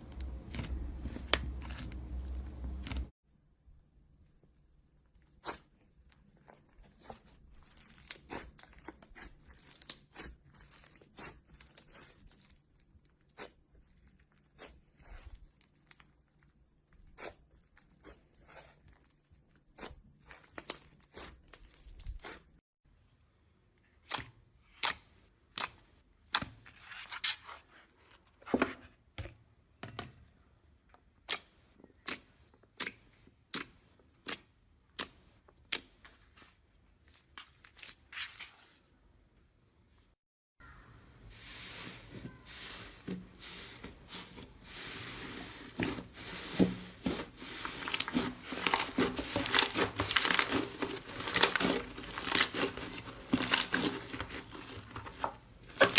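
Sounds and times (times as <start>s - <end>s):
slime crackling and popping: 47.6s - 55.9s.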